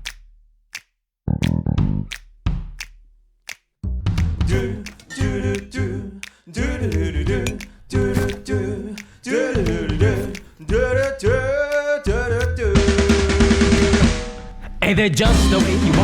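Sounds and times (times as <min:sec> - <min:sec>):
low bass: 0:01.3 - 0:02.2, 0:03.8 - 0:06.0, 0:15.3 - 0:16.0
song with sung vocals: 0:04.3 - 0:16.0.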